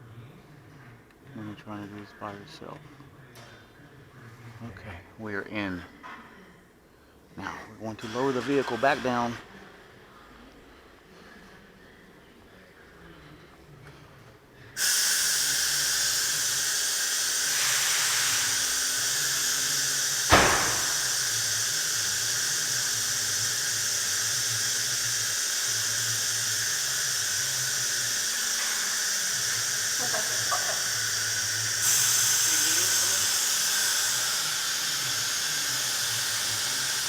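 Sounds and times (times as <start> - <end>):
hydraulic valve hissing: 14.8 - 37.0
sharp metal clank: 20.3 - 21.3.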